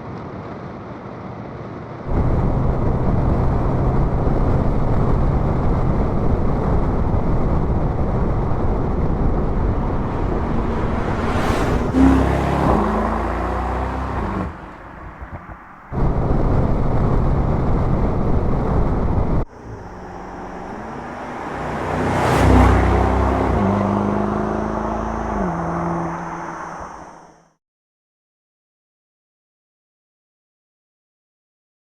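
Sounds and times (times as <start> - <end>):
road and wind noise: 0.0 - 27.6
car engine exhaust passing: 2.1 - 27.4.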